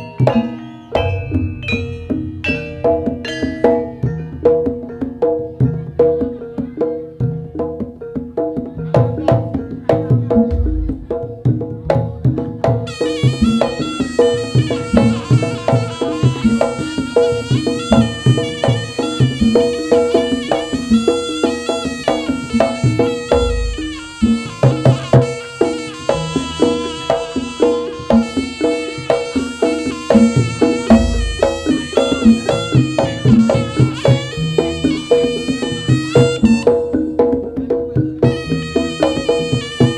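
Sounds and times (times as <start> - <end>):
drums and gamelan percussion: 0.0 - 39.9
deep low booms: 10.5 - 11.3
reedy wavering melody: 12.8 - 37.3, 38.2 - 39.9.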